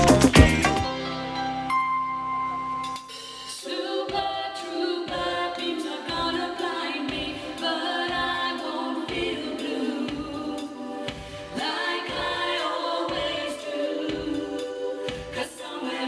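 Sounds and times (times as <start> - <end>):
choir singing pop song: 0.0 - 0.9, 3.1 - 16.0
low beat: 0.0 - 0.9.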